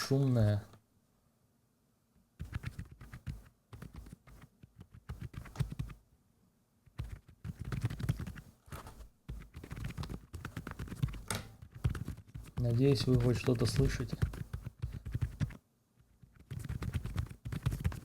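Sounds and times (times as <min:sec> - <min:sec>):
quiet mechanical keyboard typing: 0:02.4 - 0:06.0, 0:06.9 - 0:15.6, 0:16.2 - 0:18.0.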